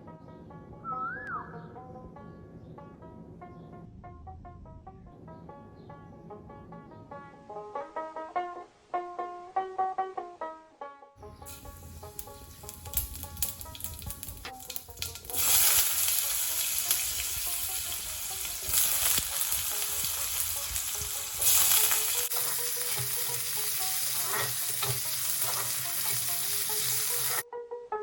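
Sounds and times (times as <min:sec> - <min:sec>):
plucked-string tune: 0:01.5 - 0:28.0
food sizzling in hot oil: 0:11.2 - 0:27.4.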